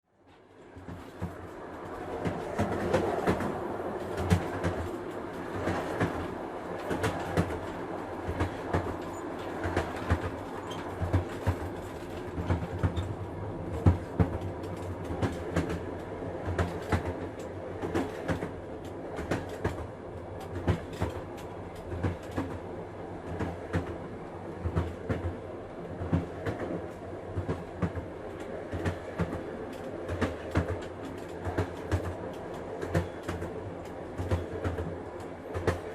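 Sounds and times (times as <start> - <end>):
train rumble inside carriage: 0.1 - 35.9
wheels clattering on rails: 0.3 - 35.9.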